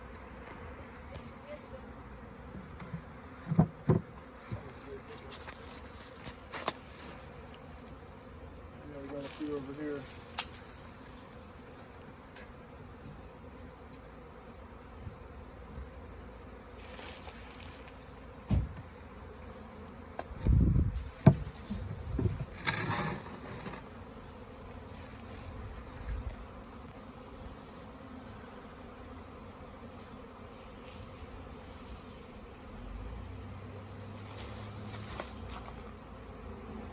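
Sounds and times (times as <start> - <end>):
bees buzzing: 0.0 - 36.9
muffled low thumps: 20.4 - 22.6.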